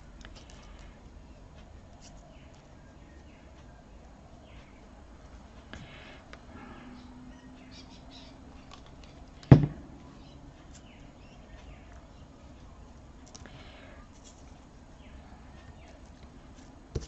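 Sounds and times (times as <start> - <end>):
faint bird chirping: 0.0 - 16.6
sharp knock: 9.5 - 9.9.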